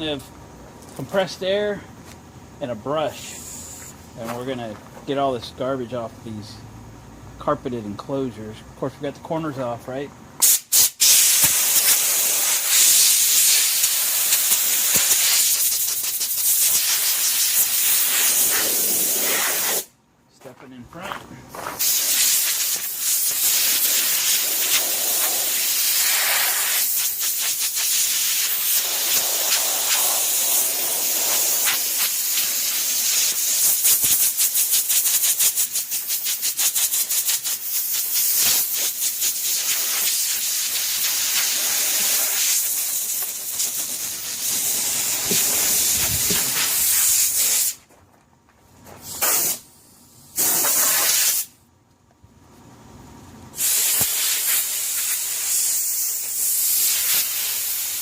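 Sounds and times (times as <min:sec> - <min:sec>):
compressed air hissing: 0:03.2 - 0:04.2, 0:10.4 - 0:19.9, 0:21.8 - 0:47.8, 0:49.0 - 0:51.6, 0:53.6 - 0:58.0.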